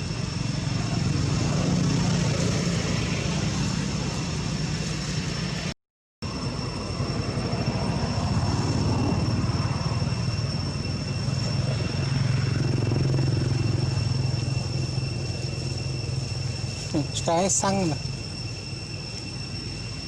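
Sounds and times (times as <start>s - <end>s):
low motor drone: 0.0s - 5.7s, 6.3s - 20.0s
thin high steady tones: 6.2s - 20.0s.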